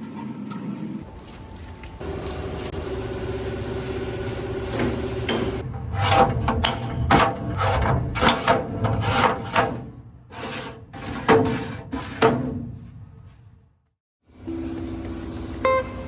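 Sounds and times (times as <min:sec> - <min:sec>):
steel drawers clanking: 0:04.4 - 0:12.8.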